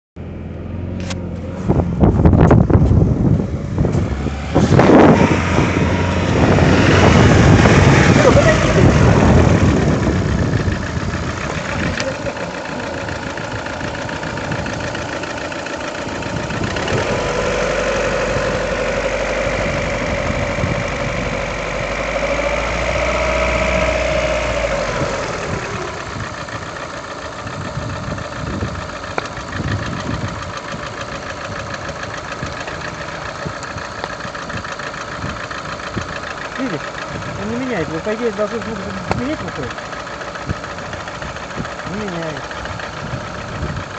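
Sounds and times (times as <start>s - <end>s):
car engine idling with a knock: 2.4s - 3.1s, 26.1s - 37.4s, 38.4s - 41.9s.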